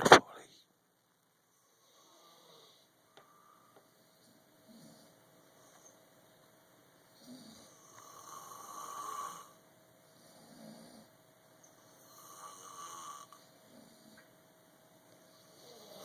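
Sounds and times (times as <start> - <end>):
soft breathing: 1.5 - 6.0
person snoring: 7.2 - 9.6, 12.0 - 14.2, 15.4 - 16.0.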